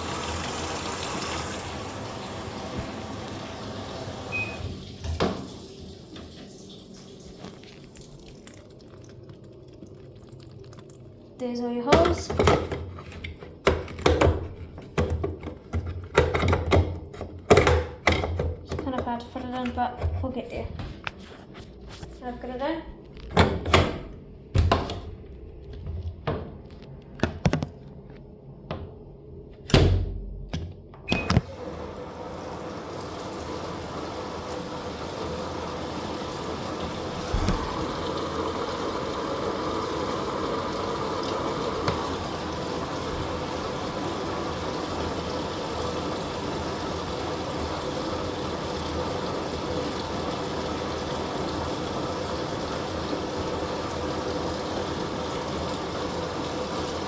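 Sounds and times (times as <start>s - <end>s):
washing machine whooshing: 0.0s - 8.2s, 28.5s - 57.0s.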